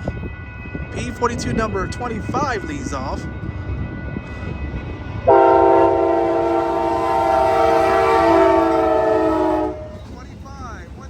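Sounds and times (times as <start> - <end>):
train rumble: 0.0 - 11.0
diesel locomotive horn: 5.2 - 10.2.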